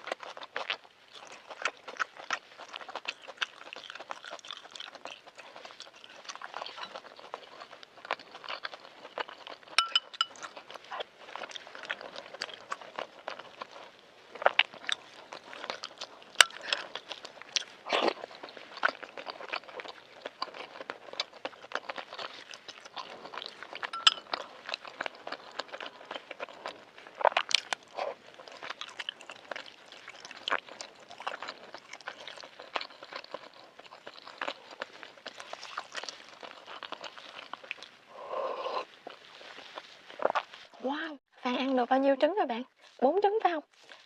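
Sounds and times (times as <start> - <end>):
wet chewing and lip-smacking: 0.0 - 40.8, 43.7 - 44.0.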